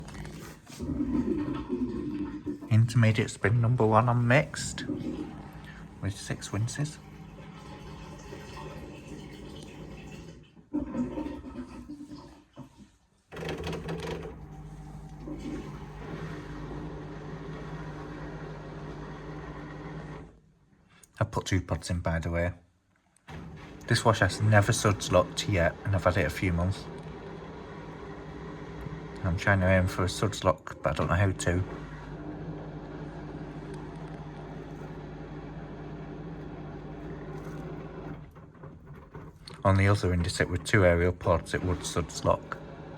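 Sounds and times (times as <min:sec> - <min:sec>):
motor and pump hum: 0:00.0 - 0:11.7, 0:13.3 - 0:20.4, 0:23.3 - 0:42.9
water draining and sloshing: 0:00.0 - 0:16.6, 0:36.4 - 0:42.9
washing machine spinning: 0:00.0 - 0:20.4, 0:23.3 - 0:42.9.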